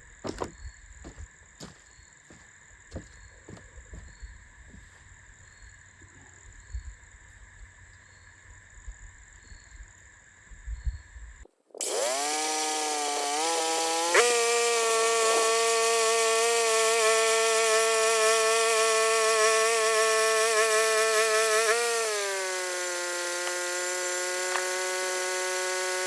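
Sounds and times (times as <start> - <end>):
bandsaw mill engine running: 11.8 - 26.0.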